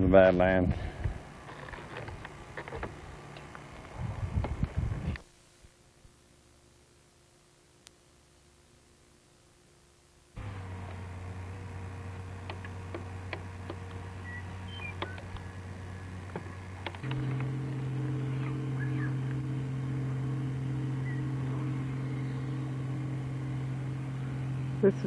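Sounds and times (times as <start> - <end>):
engine humming: 0.0 - 5.3, 10.4 - 25.0
light clicks: 10.8 - 19.4
bird chirps: 14.0 - 15.5, 18.1 - 19.3, 20.8 - 22.9.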